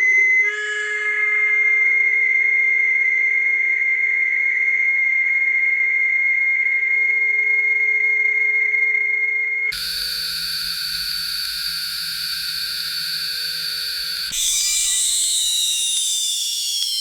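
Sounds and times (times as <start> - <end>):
high-pitched factory machine whine: 9.8 - 17.0.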